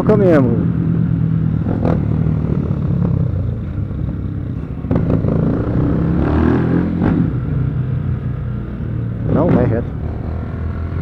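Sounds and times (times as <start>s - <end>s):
motorcycle engine running: 0.4s - 11.0s.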